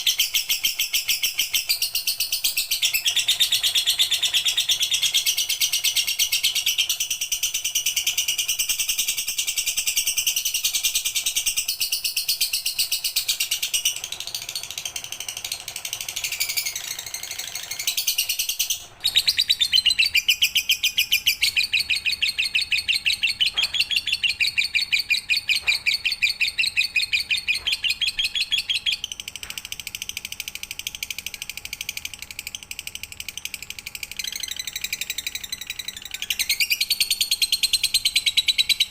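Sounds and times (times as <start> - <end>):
lovebird chattering trill: 0.0 - 29.2.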